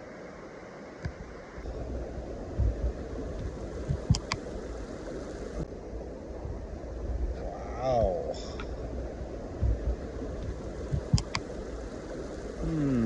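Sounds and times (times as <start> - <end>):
wind buffeting microphone: 1.0 - 13.0
heavy low rumble: 1.4 - 13.0
sharp clicks: 3.9 - 4.4, 11.0 - 11.5.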